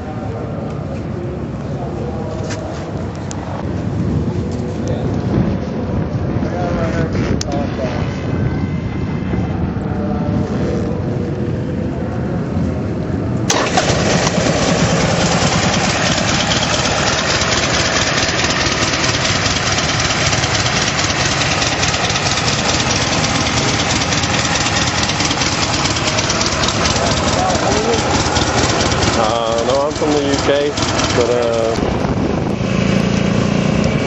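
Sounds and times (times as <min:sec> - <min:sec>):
motorcycle engine running: 0:13.5 - 0:34.0.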